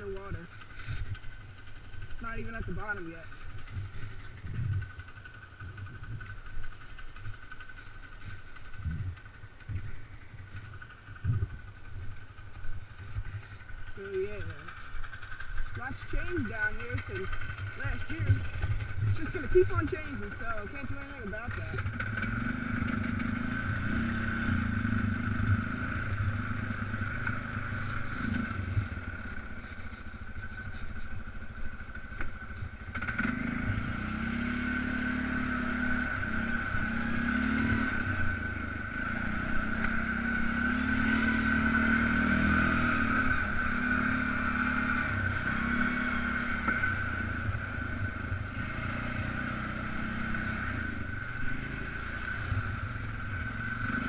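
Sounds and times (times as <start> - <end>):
atv engine running: 0.0 - 54.0.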